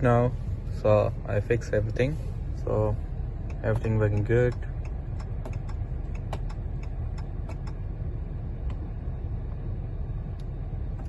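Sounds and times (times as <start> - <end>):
low hum: 0.0 - 11.0
turn signal ticking: 3.0 - 11.0.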